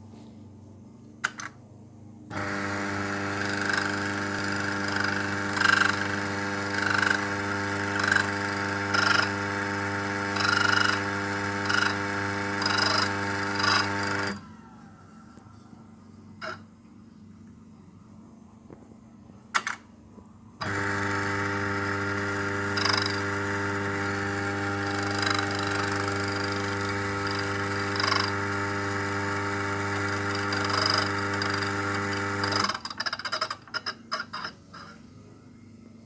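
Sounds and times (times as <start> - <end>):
coffee grinder motor humming: 2.3 - 14.5, 20.6 - 34.9.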